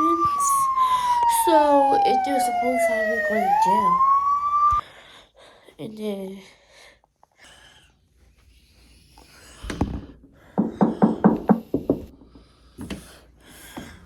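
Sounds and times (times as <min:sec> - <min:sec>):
hard knocks on door: 0:10.6 - 0:12.1.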